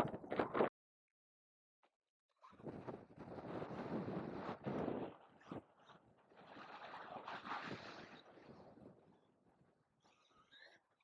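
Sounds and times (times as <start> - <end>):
gusty wind on microphone: 2.6 - 5.7.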